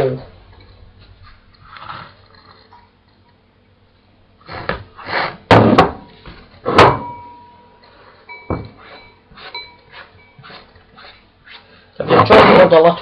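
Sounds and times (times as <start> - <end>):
kitchenware clattering: 8.2 - 10.7.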